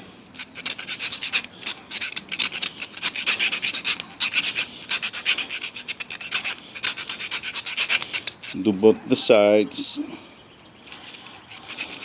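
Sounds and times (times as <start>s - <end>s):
file rasping on brass tube: 0.4s - 8.7s, 11.1s - 12.0s.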